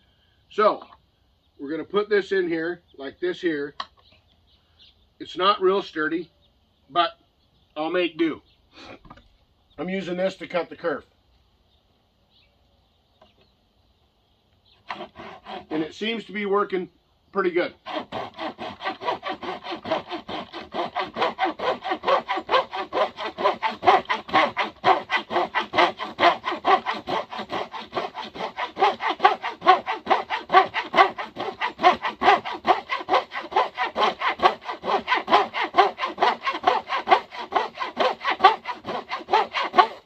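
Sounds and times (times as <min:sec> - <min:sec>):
hand saw cutting wood: 0:14.8 - 0:16.2, 0:17.8 - 0:40.0.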